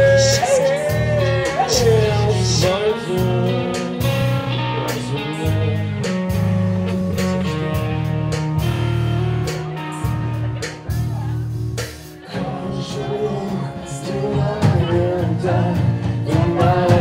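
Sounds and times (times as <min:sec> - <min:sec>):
person singing: 0:00.0 - 0:06.1, 0:12.1 - 0:17.0
bass line: 0:00.0 - 0:17.0
strummed electric guitar: 0:00.0 - 0:17.0.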